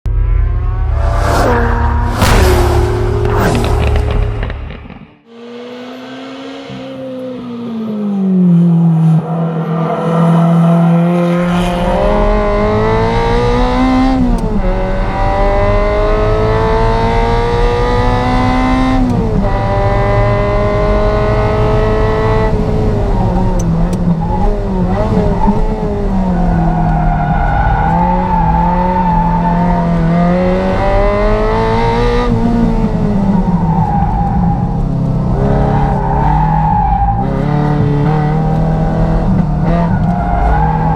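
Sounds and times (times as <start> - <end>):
car engine accelerating hard: 5.3 - 40.9.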